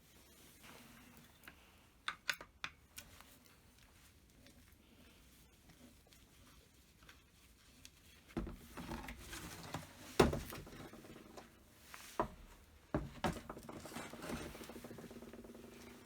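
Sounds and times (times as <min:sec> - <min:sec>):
light rattling and rubbing: 0:05.8 - 0:16.0.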